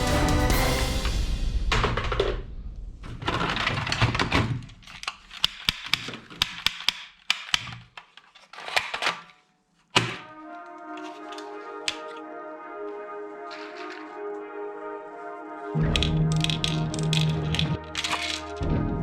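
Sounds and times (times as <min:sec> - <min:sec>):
music: 0:00.0 - 0:02.7, 0:10.0 - 0:19.0
toy guns clicking and snapping: 0:04.7 - 0:12.2, 0:15.9 - 0:18.6.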